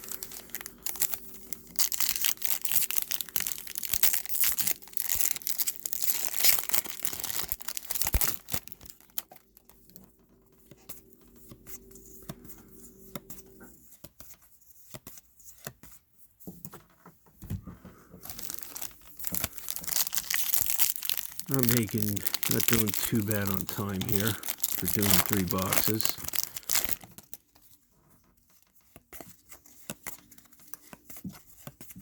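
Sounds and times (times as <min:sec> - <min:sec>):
wrappers tearing and crinkling: 0:00.0 - 0:09.7, 0:18.3 - 0:27.4.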